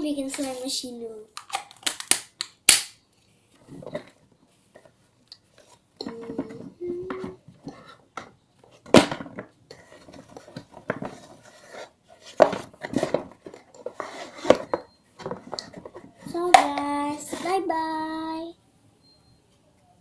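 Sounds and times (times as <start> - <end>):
child humming a note: 6.0 - 7.4.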